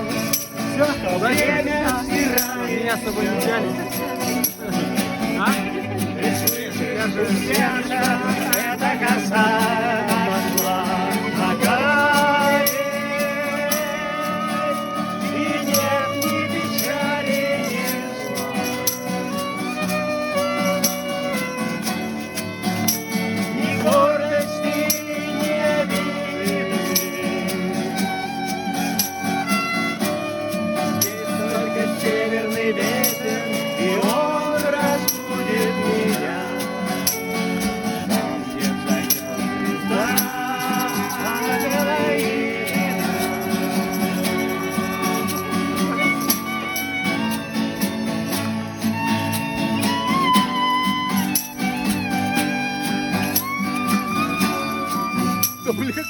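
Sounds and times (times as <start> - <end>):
shaker rattling: 0.0 - 21.9, 22.8 - 56.0
guitar: 0.0 - 56.0
sliding melody line: 29.4 - 56.0.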